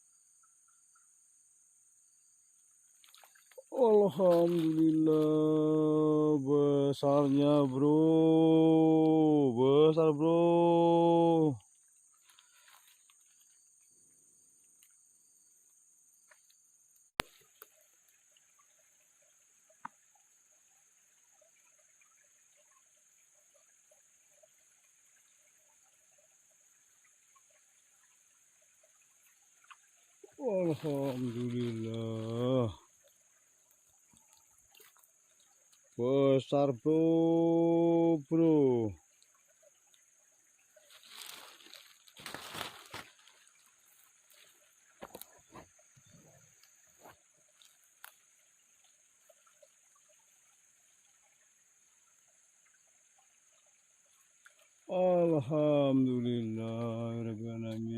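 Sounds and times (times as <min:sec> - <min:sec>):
crickets chirping: 0:00.0 - 0:57.9
faint ticks or drips: 0:02.5 - 0:57.9
water sloshing and splashing: 0:02.9 - 0:05.2, 0:39.1 - 0:51.2.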